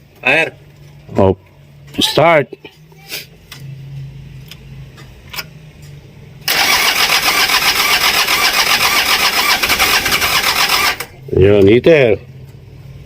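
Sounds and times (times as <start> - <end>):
diesel engine starting and clattering: 6.4 - 11.2.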